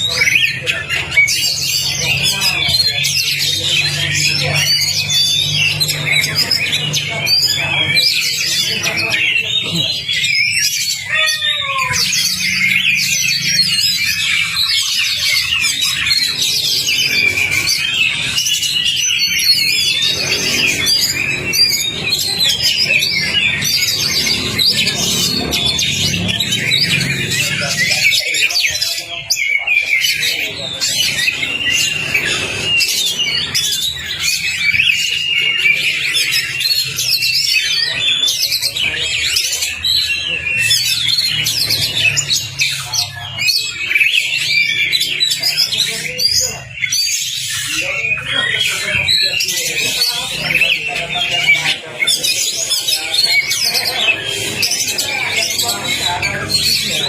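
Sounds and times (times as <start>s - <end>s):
bird singing varied chirps: 0.0s - 57.0s.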